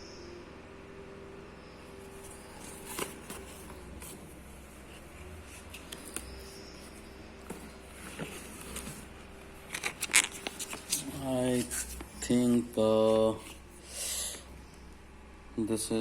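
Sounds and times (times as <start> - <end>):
cardboard box rustling: 2.1 - 6.3, 6.9 - 12.5.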